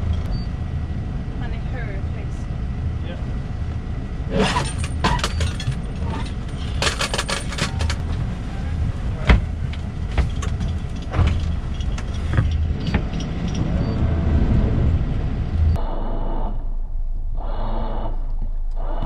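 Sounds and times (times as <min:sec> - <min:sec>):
diesel engine idling: 0:00.0 - 0:19.0
gear clicking and rattling: 0:04.3 - 0:15.8.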